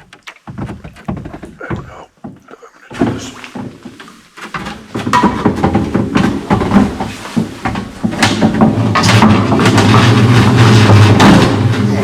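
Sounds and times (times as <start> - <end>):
canoe knocking and scraping: 0.0 - 12.0.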